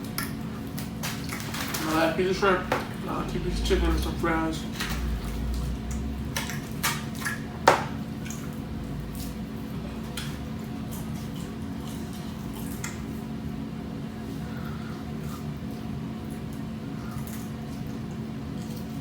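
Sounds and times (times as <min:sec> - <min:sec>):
steady low hum: 0:00.0 - 0:19.0
person chewing food: 0:05.0 - 0:13.4.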